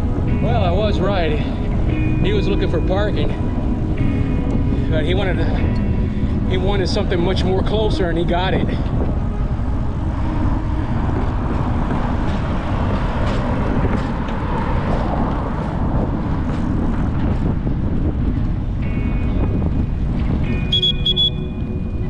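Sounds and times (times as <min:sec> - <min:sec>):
road and traffic noise: 0:00.0 - 0:22.0
wind rushing over microphone: 0:00.0 - 0:22.0.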